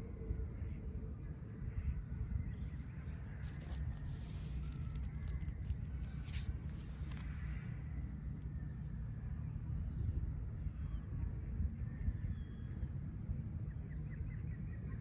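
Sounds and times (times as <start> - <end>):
steady low rumble: 0.0 - 15.0
cards clicking and turning: 3.4 - 7.4.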